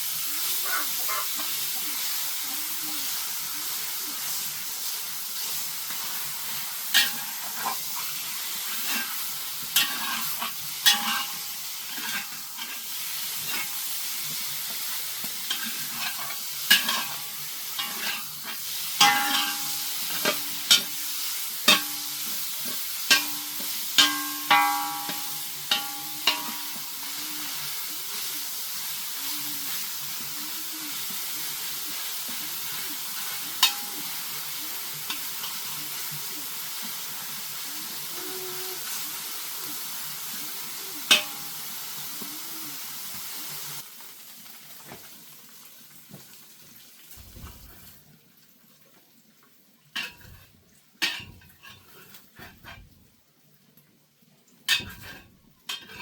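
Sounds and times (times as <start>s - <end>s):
food sizzling in a metal pan: 0.0s - 48.2s, 48.8s - 53.8s, 54.5s - 56.0s
utensil knocking and scraping pan: 8.7s - 13.7s, 14.7s - 21.0s, 21.6s - 27.0s.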